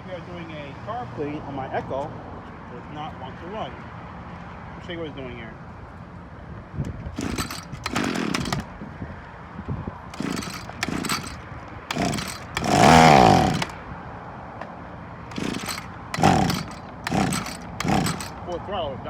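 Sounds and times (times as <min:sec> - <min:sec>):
trimmer engine revving: 0:07.2 - 0:08.7, 0:10.2 - 0:13.8, 0:15.3 - 0:18.5
string trimmer engine sputtering: 0:07.2 - 0:08.8, 0:10.1 - 0:13.8, 0:15.3 - 0:18.7.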